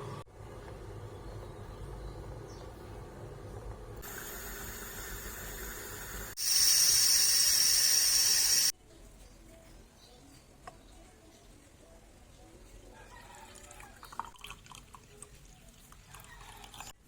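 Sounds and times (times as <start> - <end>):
coffee maker humming: 4.0 - 8.7
high-pitched steam hiss: 4.0 - 8.7.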